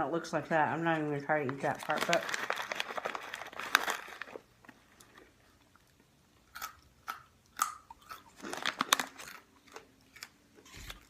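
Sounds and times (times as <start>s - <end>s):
chewing and crunching popcorn: 0.7s - 11.0s.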